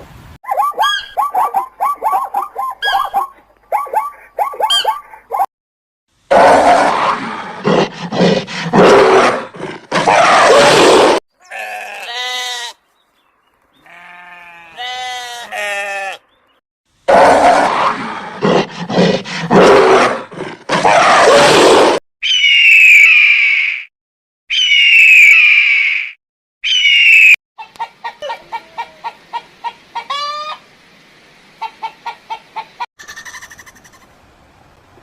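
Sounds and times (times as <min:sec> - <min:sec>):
high-pitched animal call: 0:00.5 - 0:05.5, 0:13.8 - 0:16.2, 0:20.8 - 0:23.9, 0:24.5 - 0:27.4, 0:30.0 - 0:30.6, 0:33.0 - 0:34.1
harsh animal grunting calls: 0:06.3 - 0:12.0, 0:17.1 - 0:21.7
pulsed bleat-like calls: 0:11.4 - 0:12.8, 0:13.8 - 0:16.2, 0:33.0 - 0:34.0.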